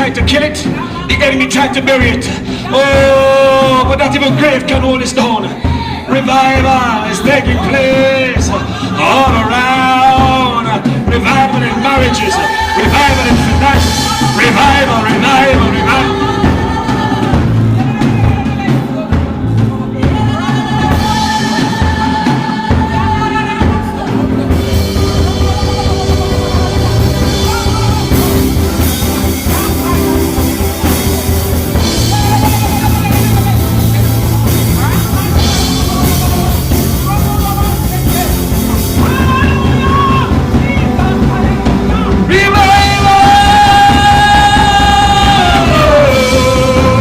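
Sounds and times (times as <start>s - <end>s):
worship band with drums: 0.0s - 47.0s
person singing long notes: 11.5s - 47.0s.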